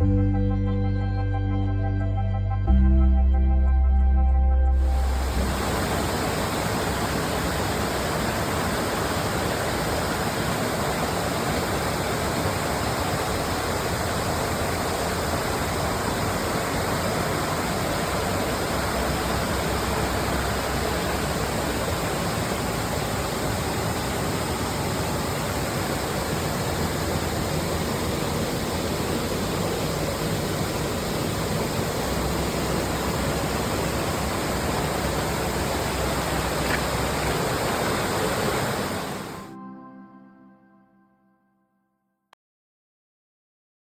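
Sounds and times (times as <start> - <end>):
waterfall rushing: 4.8 - 39.5.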